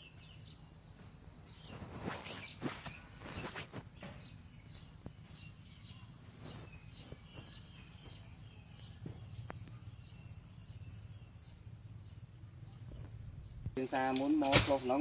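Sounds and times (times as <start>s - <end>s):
faint low hum: 0.0s - 15.0s
bird chirping downward slides: 1.6s - 11.1s.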